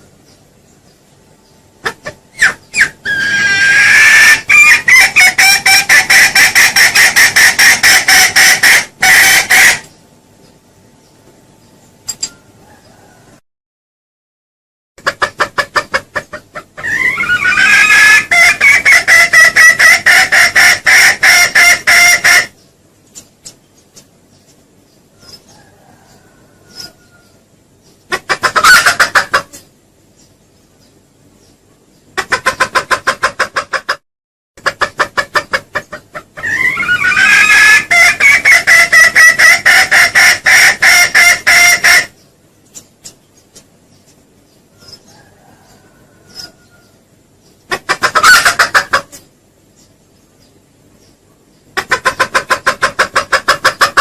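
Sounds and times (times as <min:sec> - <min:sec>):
junglefowl clucking call: 0:01.8 - 0:09.9, 0:15.0 - 0:22.6, 0:28.1 - 0:29.6, 0:32.2 - 0:34.0, 0:34.6 - 0:42.2, 0:47.7 - 0:49.3, 0:51.8 - 0:54.0.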